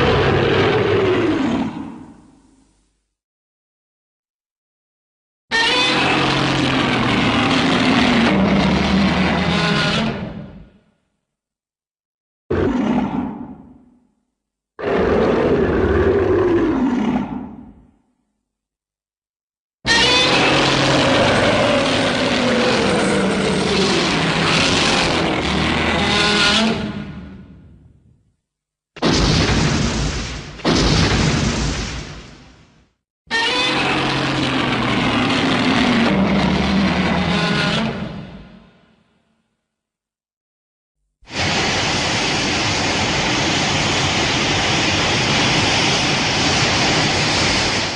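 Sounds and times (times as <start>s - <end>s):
loud rushing noise: 41.3s - 47.9s.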